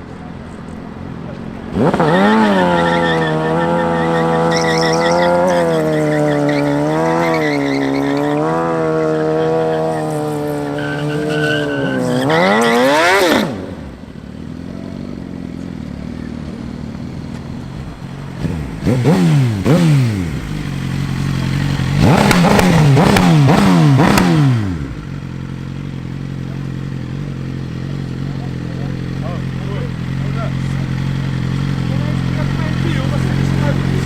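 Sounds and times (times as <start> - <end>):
vehicle engine revving and idling: 0.0 - 34.0.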